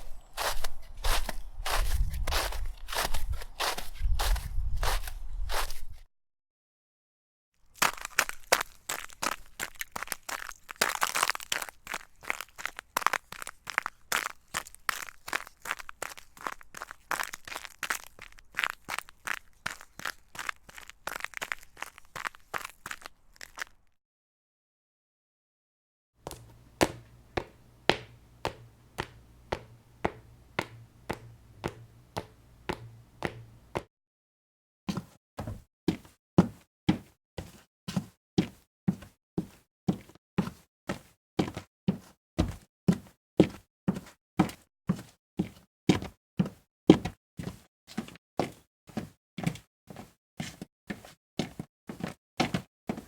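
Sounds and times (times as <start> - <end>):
footsteps walking: 0.0 - 6.0, 7.8 - 23.8, 26.2 - 33.9
footsteps sharp taps: 26.2 - 33.9
low steady hum: 26.3 - 33.8.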